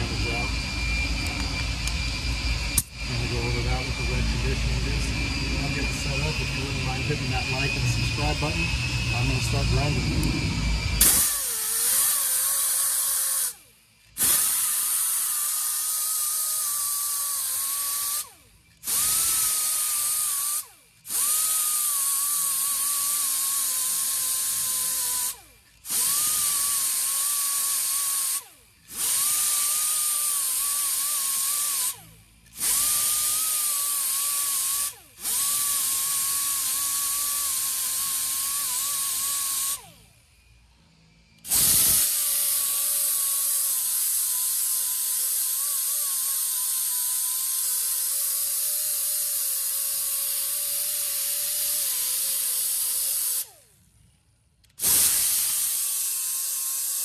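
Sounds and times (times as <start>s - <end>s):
power grinder whining on metal: 0.0s - 54.0s, 54.6s - 57.0s.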